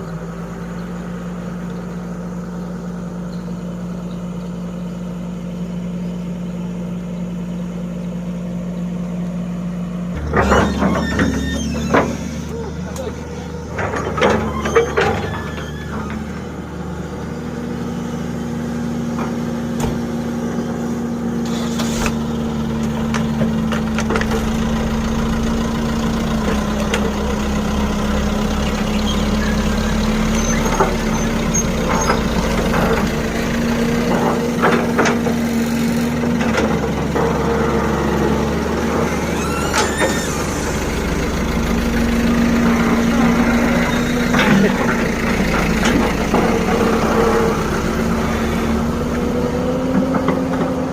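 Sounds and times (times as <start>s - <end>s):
excavator diesel engine running: 0.0s - 50.9s
knocks and clanks: 10.2s - 16.5s.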